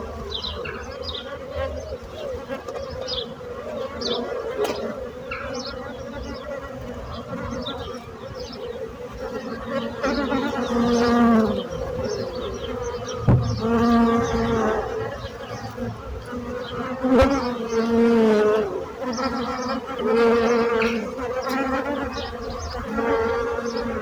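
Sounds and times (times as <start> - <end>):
swarm of bees buzzing: 0.0 - 24.0
single bee buzzing close: 9.7 - 24.0
short knock: 13.2 - 16.1.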